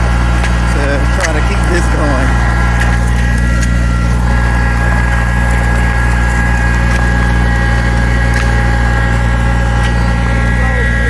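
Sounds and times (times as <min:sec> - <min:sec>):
tractor engine running: 0:00.0 - 0:11.0.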